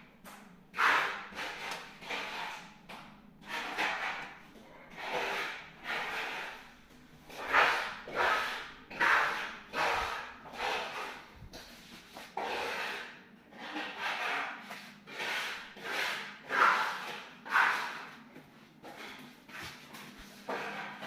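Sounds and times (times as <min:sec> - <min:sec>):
hand tool scraping hard surface: 0:00.7 - 0:02.7, 0:03.4 - 0:18.2, 0:18.8 - 0:21.0.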